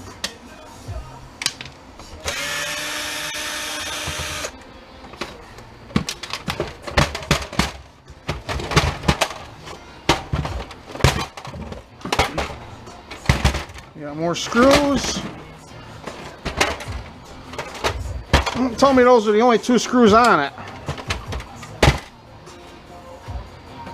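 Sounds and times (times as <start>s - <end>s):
plastic parts clicking and knocking: 1.4s - 2.4s, 3.7s - 13.9s, 14.5s - 18.9s, 20.2s - 22.1s
power drill running: 2.3s - 4.5s.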